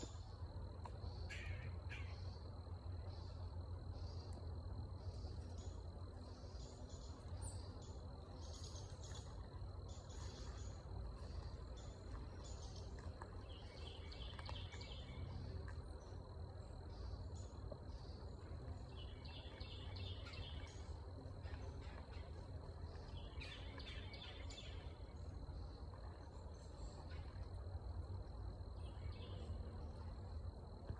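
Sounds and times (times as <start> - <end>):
high insect drone: 0.0 - 30.9
low steady rumble: 0.0 - 30.9
trilled bird call: 1.3 - 2.2
small birds chirping: 5.0 - 27.5.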